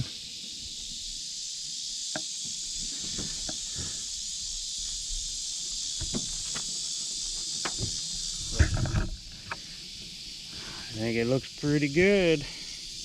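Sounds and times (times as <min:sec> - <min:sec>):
insects buzzing: 0:00.0 - 0:13.0
light knocks: 0:06.0 - 0:06.7.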